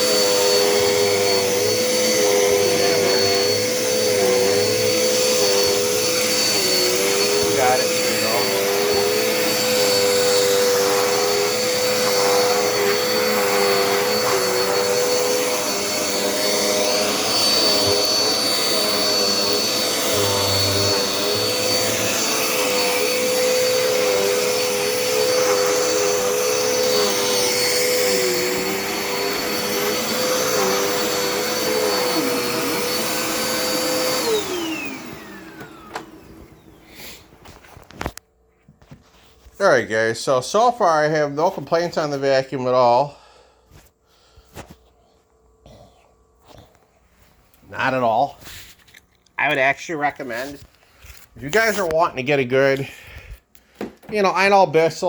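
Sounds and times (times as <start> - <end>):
vacuum cleaner motor whine: 0.0 - 38.2.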